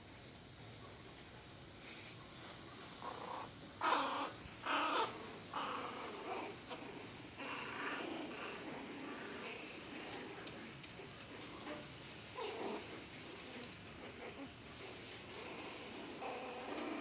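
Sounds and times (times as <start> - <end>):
puppies yelping and whining: 3.8 - 8.9.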